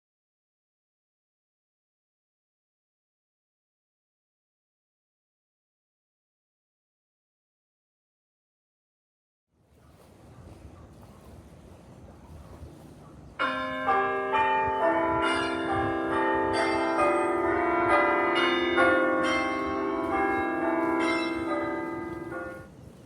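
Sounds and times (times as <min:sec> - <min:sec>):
bell chimes melody: 0:13.4 - 0:22.7.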